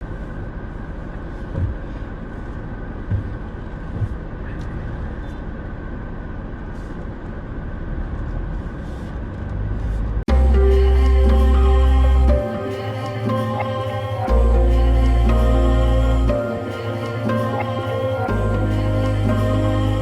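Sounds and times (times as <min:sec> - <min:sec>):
car engine and road noise: 0:00.0 - 0:11.4.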